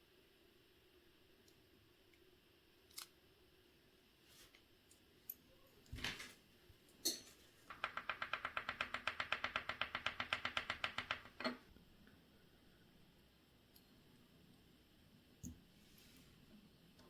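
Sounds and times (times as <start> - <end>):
small mechanical clicks: 2.9 - 3.1.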